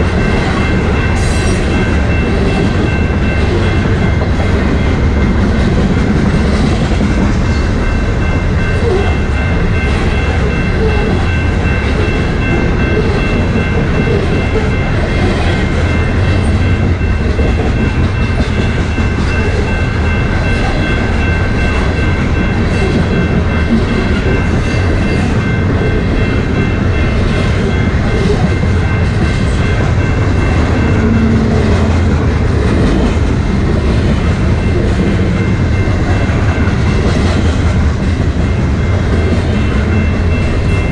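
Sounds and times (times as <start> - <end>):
train wheels rumbling on rails: 0.0 - 40.9.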